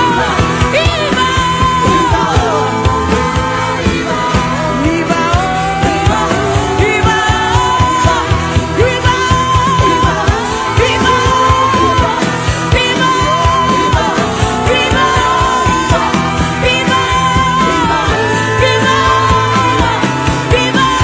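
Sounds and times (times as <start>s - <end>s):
music with steady beat: 0.0s - 21.0s
person singing: 0.0s - 21.0s.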